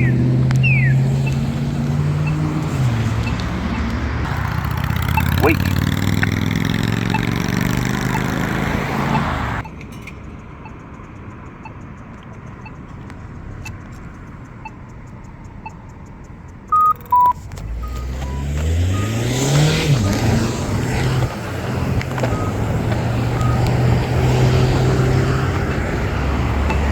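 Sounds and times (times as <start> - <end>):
short electronic beeps: 0.0 - 3.9, 5.0 - 9.8, 16.7 - 21.3, 22.3 - 22.6, 23.3 - 25.4
car accelerating: 0.0 - 9.7, 10.3 - 26.9
pedestrian button ticking: 0.0 - 9.8, 10.4 - 26.9.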